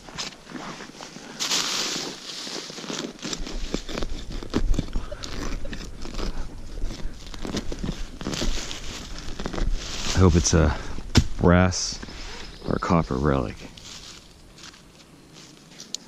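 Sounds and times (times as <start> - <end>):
digging in soil and leaf litter: 0.0 - 16.0
scraping rush: 0.6 - 14.3
crunching cuts and small knocks: 10.8 - 12.1.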